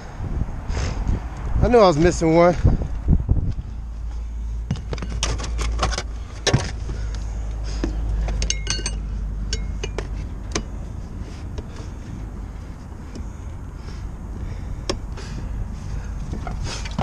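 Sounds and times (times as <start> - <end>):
metal tools clanking: 8.2 - 10.7.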